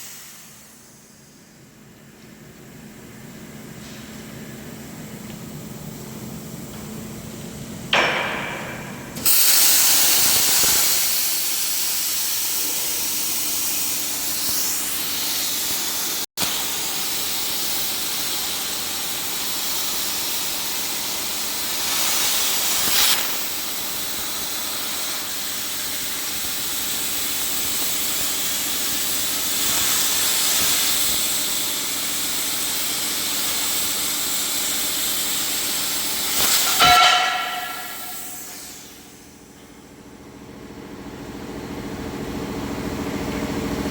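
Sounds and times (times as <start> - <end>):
plasma cutting torch hissing: 0.0 - 1.4, 9.2 - 39.5.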